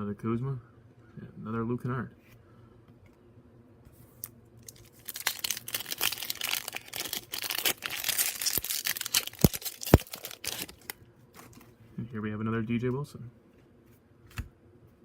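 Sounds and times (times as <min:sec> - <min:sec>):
foil wrapper tearing and crinkling: 0:04.6 - 0:11.6.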